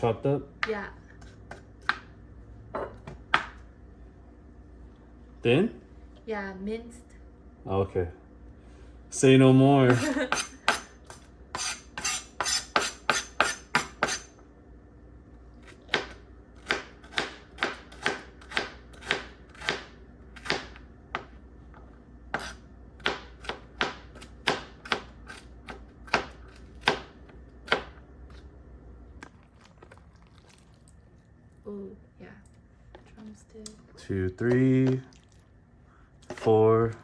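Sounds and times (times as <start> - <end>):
knife chopping on cutting board: 11.6 - 14.3, 15.7 - 21.4, 22.3 - 28.4.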